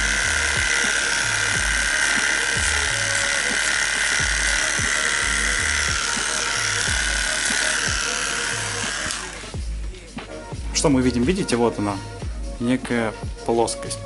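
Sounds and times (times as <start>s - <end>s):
electric hair clipper buzzing: 0.0s - 9.7s
background music with steady beat: 0.0s - 14.0s.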